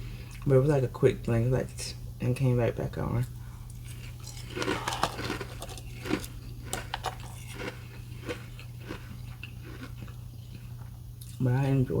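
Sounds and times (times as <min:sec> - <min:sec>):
chewing ice crunches: 0:03.8 - 0:11.4.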